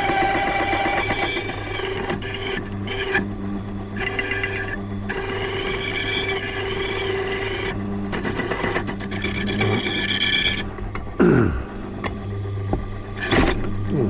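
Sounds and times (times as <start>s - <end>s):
key cutting machine motor hum: 0.0s - 14.0s.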